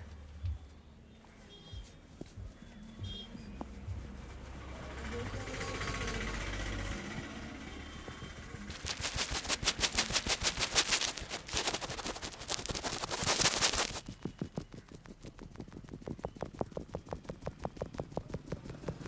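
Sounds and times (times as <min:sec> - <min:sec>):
hands slapping and tapping head: 0:08.7 - 0:19.0.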